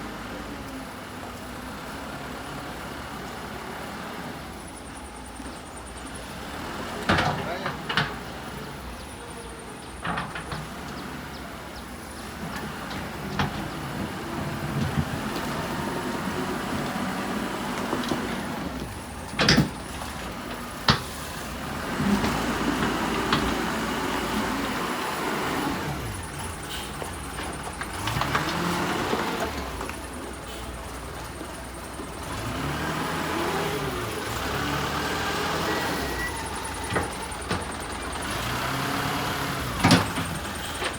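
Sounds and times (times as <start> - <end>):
wheel loader engine revving: 0.0 - 40.9.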